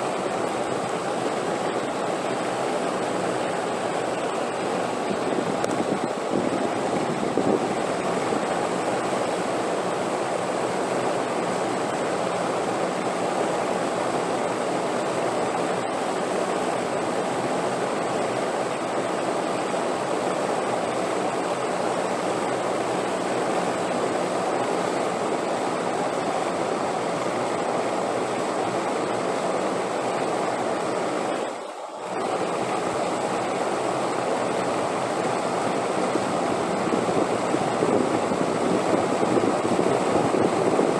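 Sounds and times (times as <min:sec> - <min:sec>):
rushing wind: 0:04.0 - 0:09.6, 0:34.6 - 0:40.9.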